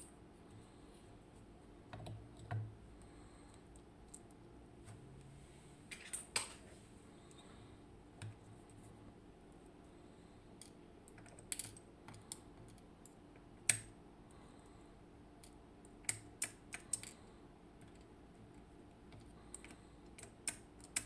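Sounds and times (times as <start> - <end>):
small lock parts clicking: 15.4 - 17.2, 19.1 - 21.0.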